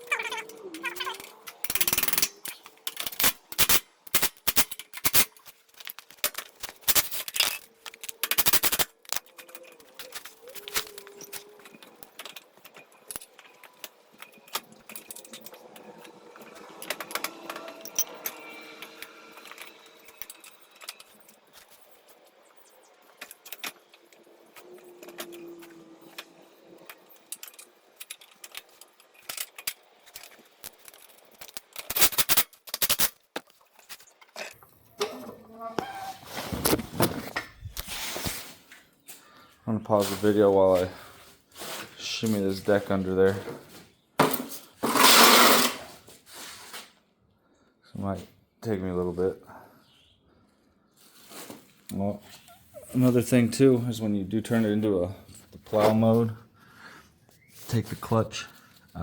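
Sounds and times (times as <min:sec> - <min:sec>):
metal tools clinking and rattling: 0:00.0 - 0:37.9, 0:44.2 - 0:46.0.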